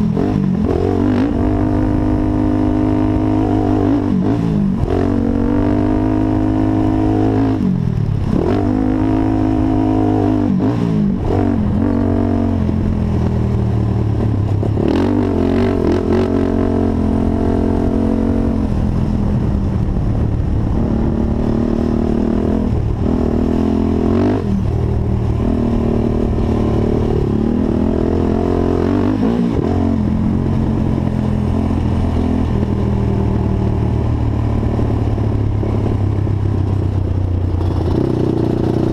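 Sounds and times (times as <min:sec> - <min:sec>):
quad engine revving: 0:00.0 - 0:13.0, 0:14.5 - 0:19.0, 0:20.7 - 0:32.5, 0:37.6 - 0:38.9.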